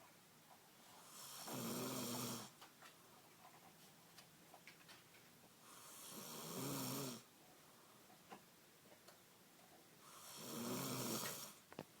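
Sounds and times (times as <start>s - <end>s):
woman snoring loudly: 1.1s - 2.5s, 5.8s - 7.3s, 10.1s - 11.6s.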